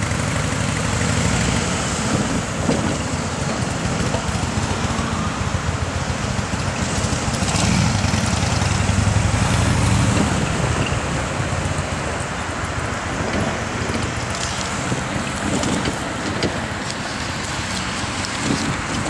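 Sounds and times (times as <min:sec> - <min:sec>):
vehicle low rumble: 0:00.0 - 0:19.0.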